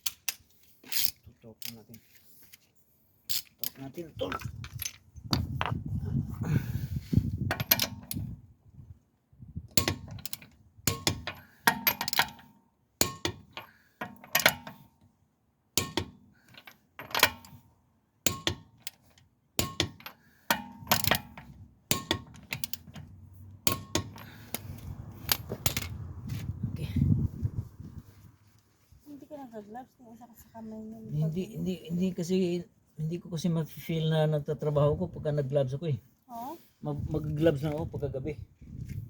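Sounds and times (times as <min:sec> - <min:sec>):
metal tools clinking and knocking: 0:03.3 - 0:05.7, 0:07.5 - 0:08.3, 0:09.8 - 0:15.0, 0:15.8 - 0:17.6, 0:18.3 - 0:26.0.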